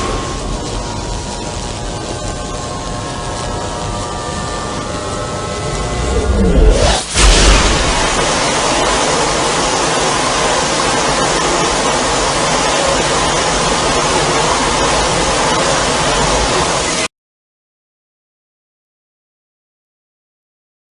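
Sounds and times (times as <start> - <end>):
loud steady rushing noise: 0.0 - 17.1.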